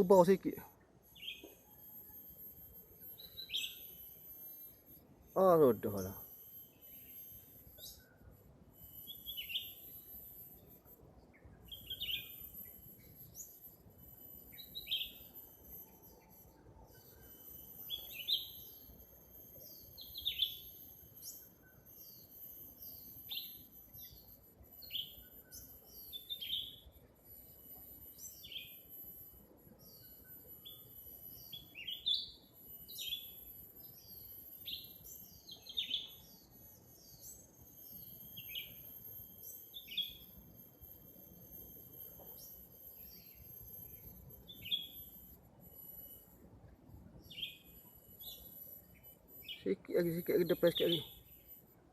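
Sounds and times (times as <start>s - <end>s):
bird chirping: 0.0s - 1.8s, 3.1s - 4.7s, 8.8s - 10.2s, 11.2s - 13.7s, 14.4s - 26.9s, 29.8s - 45.2s, 47.2s - 51.5s
high insect drone: 0.0s - 51.8s.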